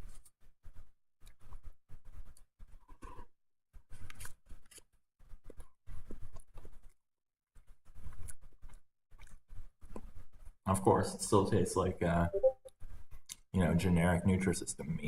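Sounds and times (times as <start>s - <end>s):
person chewing food: 1.2s - 7.0s, 7.6s - 10.6s.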